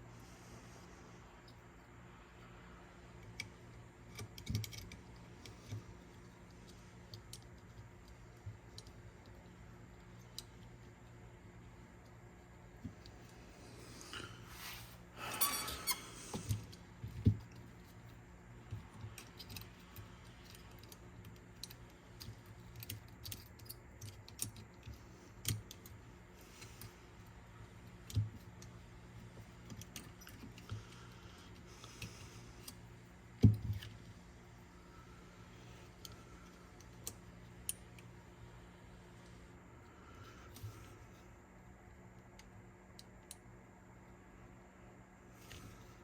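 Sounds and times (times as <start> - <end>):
clicks and taps of metal parts: 4.1 - 5.8
squeak: 15.2 - 16.3.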